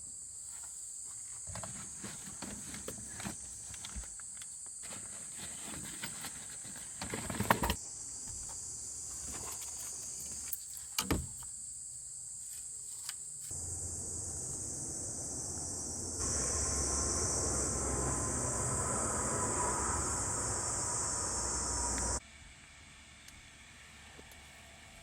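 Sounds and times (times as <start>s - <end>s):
high-pitched insect chorus: 7.5s - 22.2s.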